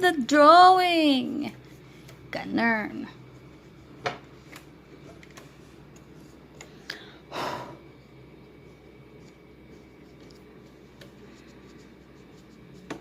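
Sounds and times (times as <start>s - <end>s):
breathy puff of air: 6.8s - 7.8s.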